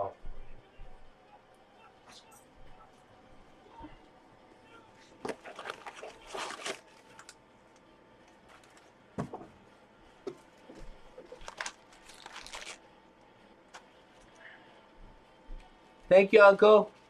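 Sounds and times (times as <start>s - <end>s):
wrapping crinkling and rustling: 5.2s - 9.0s, 11.0s - 12.9s.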